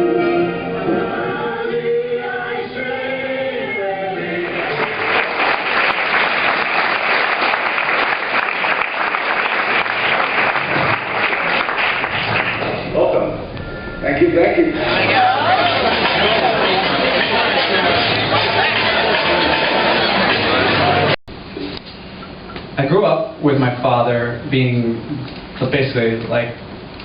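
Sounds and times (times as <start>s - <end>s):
choir singing: 0.0s - 5.4s, 13.6s - 21.2s
audience applause: 4.4s - 12.8s, 14.8s - 21.2s.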